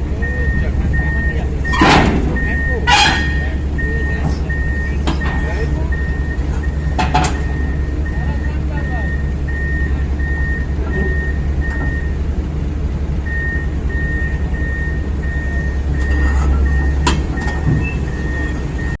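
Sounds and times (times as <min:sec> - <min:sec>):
diesel engine rumbling: 0:00.0 - 0:19.0
warning alarm beeping: 0:00.1 - 0:12.2, 0:13.2 - 0:19.0.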